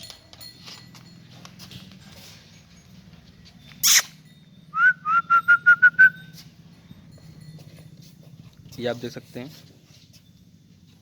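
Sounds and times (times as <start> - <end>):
short sharp noisy call: 3.8 - 4.2
rising whistled notes: 3.8 - 6.4.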